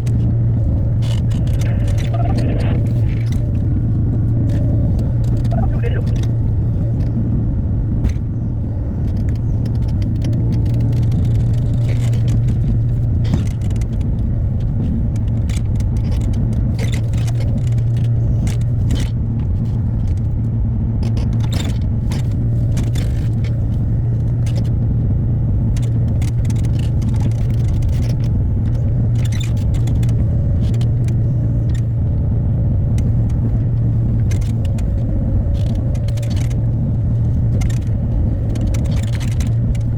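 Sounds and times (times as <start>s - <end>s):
knocks and scrapes of rock and metal: 0.0s - 3.7s
excavator diesel engine running: 0.0s - 15.4s.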